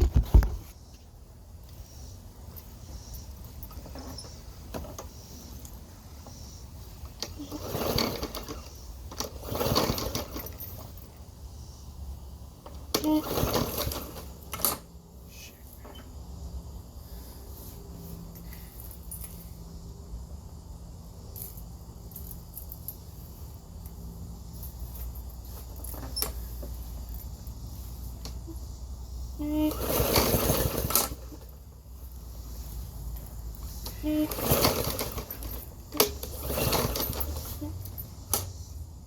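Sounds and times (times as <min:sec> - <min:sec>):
lawn mower engine cranking: 0:01.6 - 0:11.3, 0:12.6 - 0:15.0, 0:24.5 - 0:38.6.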